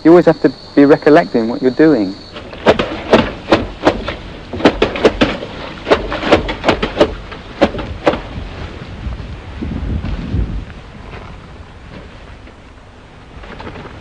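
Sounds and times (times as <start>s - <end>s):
sharp ringing knocks: 2.3s - 8.3s.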